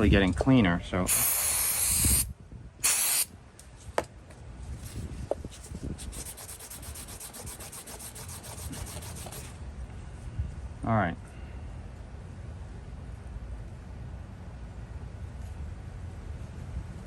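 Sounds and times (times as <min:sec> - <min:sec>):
aerosol spray hiss: 0:01.1 - 0:03.3
scrubbing on metal: 0:05.6 - 0:09.5.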